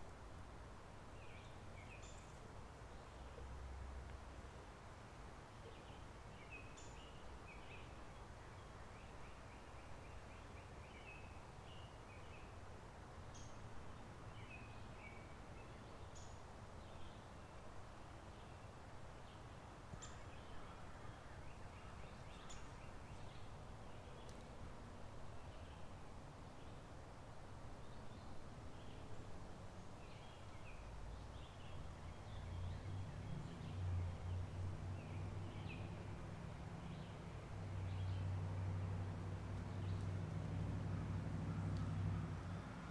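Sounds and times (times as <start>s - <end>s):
soft wind: 0.0s - 42.9s
songbirds chirping: 0.0s - 42.9s.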